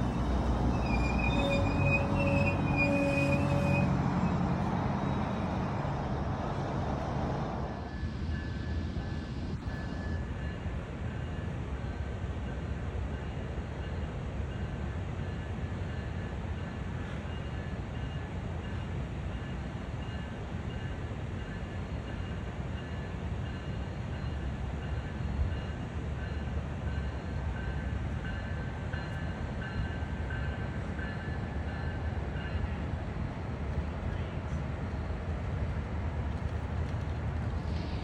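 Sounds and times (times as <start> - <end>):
train wheels rumbling on track: 0.0 - 38.0
high squeaks: 0.2 - 4.0.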